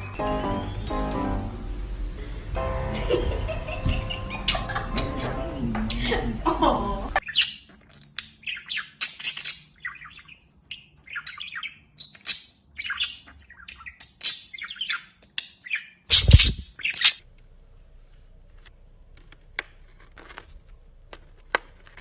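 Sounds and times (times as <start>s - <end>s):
music: 0.0s - 7.2s
voices: 2.2s - 7.2s
bird chirps and squawks: 7.2s - 17.2s.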